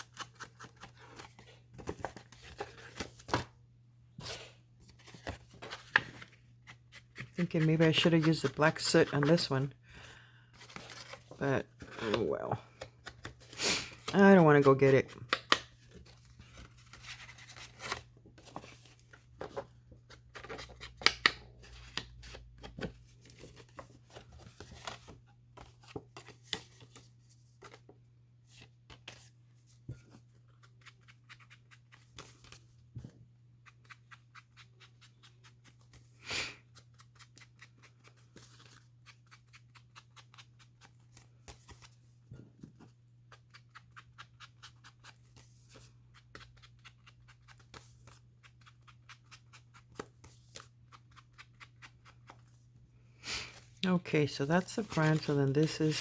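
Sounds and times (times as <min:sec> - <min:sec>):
paper rustling: 0:10.5 - 0:27.9, 0:53.4 - 0:56.0.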